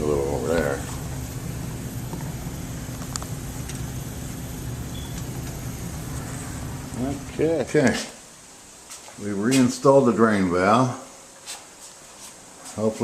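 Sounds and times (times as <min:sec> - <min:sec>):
low mechanical hum: 0:00.0 - 0:08.0.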